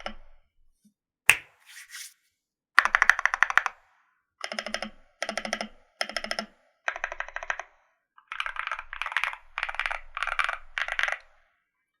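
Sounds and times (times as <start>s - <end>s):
mechanical keyboard typing: 4.4s - 7.7s, 8.3s - 11.3s.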